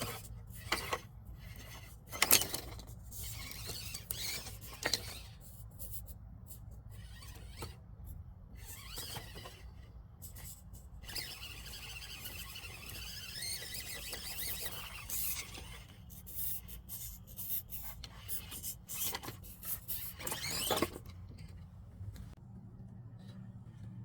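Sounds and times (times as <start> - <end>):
small electric motor whining: 0.0 - 5.9, 6.8 - 7.8, 8.5 - 21.6.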